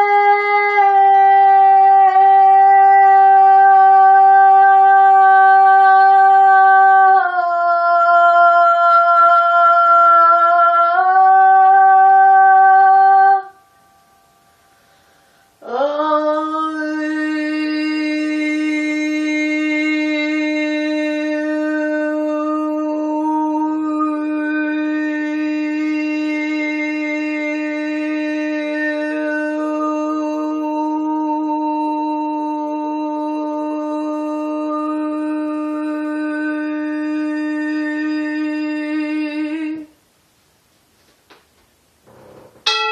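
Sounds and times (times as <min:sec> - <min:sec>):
high held tones: 0:42.1 - 0:42.9.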